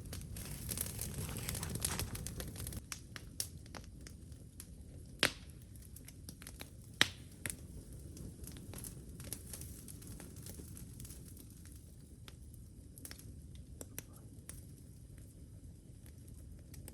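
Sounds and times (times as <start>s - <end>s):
sharp fire pops: 0.0s - 12.4s
campfire crackling: 0.0s - 16.9s.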